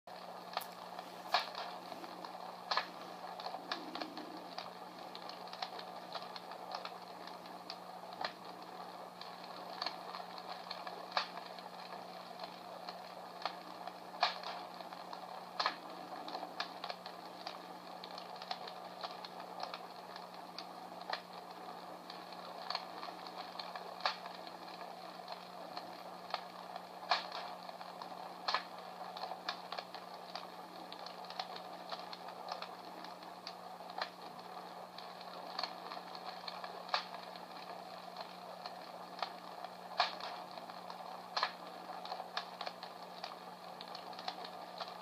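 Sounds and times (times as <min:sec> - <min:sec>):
imitation fire crackle: 0:00.1 - 0:45.0
soft hiss: 0:00.1 - 0:45.0.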